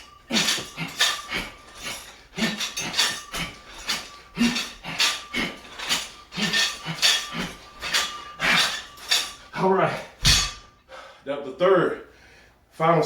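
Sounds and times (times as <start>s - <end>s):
person breathing hard: 0.3s - 10.2s, 10.8s - 11.3s.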